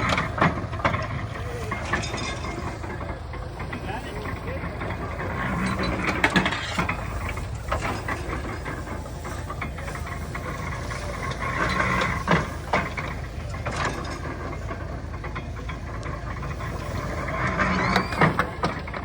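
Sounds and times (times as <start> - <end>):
engine drone: 0.0 - 19.0
machinery knocking and clanking: 0.0 - 19.0.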